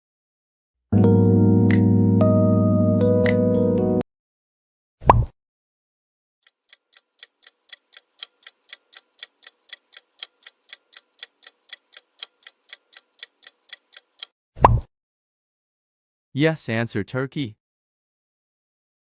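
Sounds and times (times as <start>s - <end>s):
pop sound effect: 5.0s - 5.3s, 14.6s - 14.9s.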